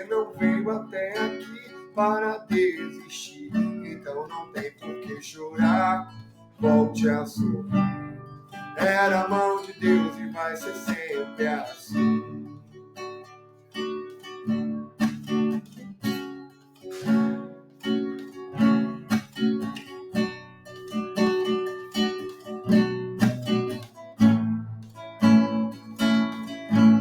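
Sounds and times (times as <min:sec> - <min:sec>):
acoustic guitar strumming chords: 0:00.0 - 0:27.0.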